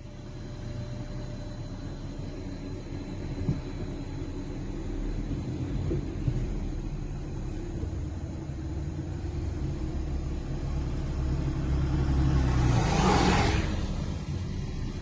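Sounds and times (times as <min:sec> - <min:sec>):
vehicle engine rumbling: 0:00.0 - 0:15.0
vehicle passing by: 0:11.0 - 0:15.0.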